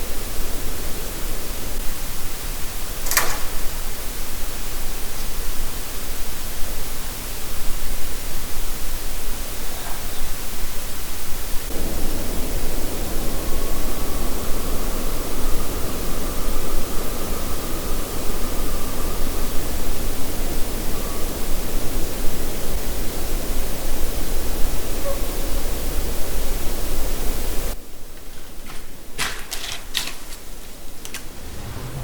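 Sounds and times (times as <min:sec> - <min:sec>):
steady hiss: 0:00.0 - 0:32.0
low rushing noise: 0:11.6 - 0:20.8, 0:31.2 - 0:32.0.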